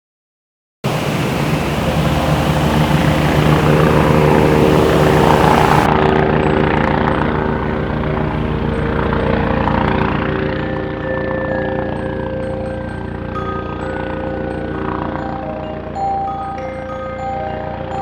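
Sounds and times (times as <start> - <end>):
loud hiss: 0.9 - 5.9
motor with chopping rhythm: 0.9 - 16.2.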